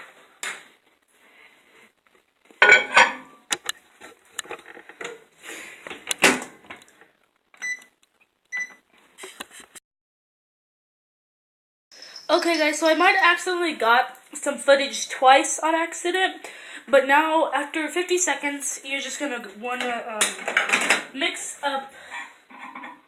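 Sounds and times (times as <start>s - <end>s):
bowl clattering and knocking: 2.6s - 3.4s
microwave keypad beeps: 7.6s - 7.9s, 8.5s - 8.8s.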